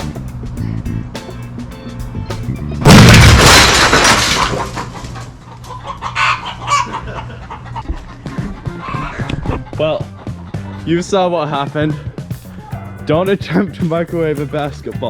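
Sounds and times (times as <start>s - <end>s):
loud blast of bursting ball: 2.8s - 4.7s
chickens clucking: 4.3s - 10.8s.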